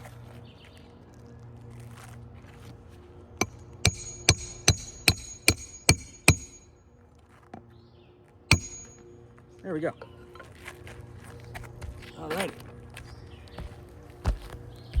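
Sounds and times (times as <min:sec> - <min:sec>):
hammer striking roofing nail: 0:03.4 - 0:06.7, 0:08.5 - 0:09.0.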